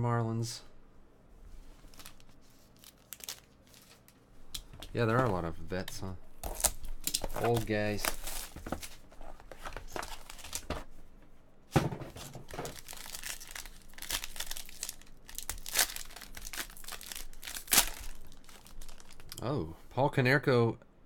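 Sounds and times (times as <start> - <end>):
plastic wrapper crinkling and tearing: 1.8 - 4.2, 12.4 - 19.5.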